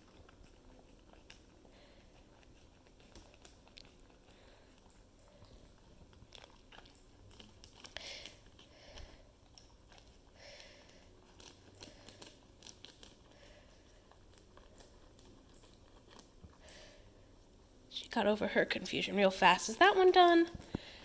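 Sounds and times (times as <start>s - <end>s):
dog licking and mouth smacks: 0.0s - 16.8s.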